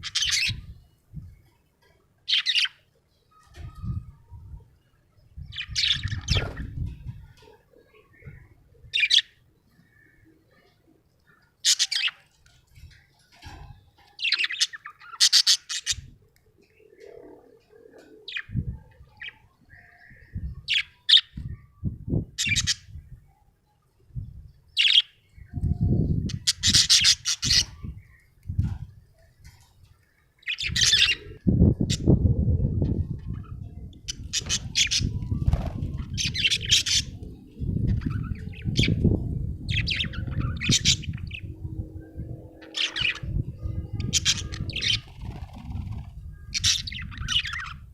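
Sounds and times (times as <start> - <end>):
low thumps and rumbles: 37.1 - 46.2.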